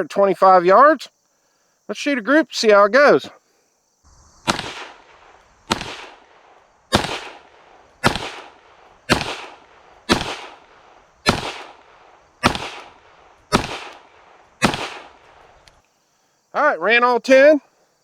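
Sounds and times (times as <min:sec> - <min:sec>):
pistol shots echoing: 0:04.4 - 0:15.5.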